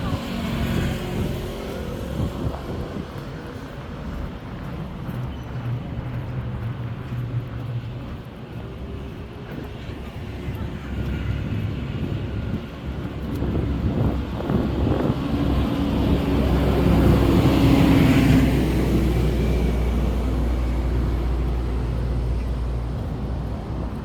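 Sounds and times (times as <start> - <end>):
road traffic rumble: 0.0 - 24.0
vehicle passing close by: 13.5 - 24.0.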